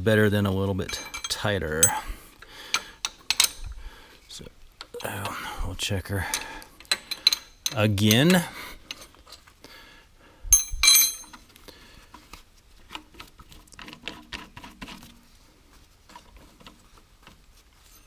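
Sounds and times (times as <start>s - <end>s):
steel clank with metallic ring: 0.9s - 2.1s, 10.5s - 11.3s.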